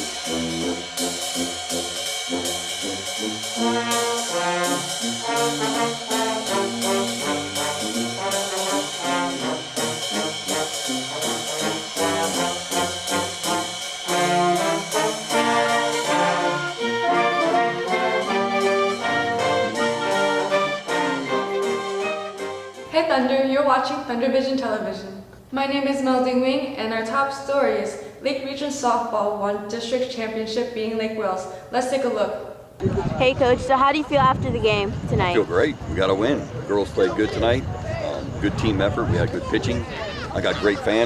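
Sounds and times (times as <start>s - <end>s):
brass instrumental music with beat: 0.0s - 23.0s, 38.4s - 41.0s.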